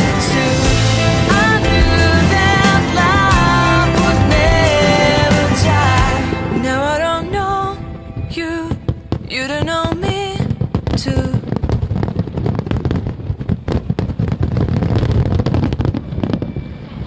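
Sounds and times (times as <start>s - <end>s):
song with singer: 0.0s - 10.4s
fireworks crackling and popping: 0.0s - 16.9s.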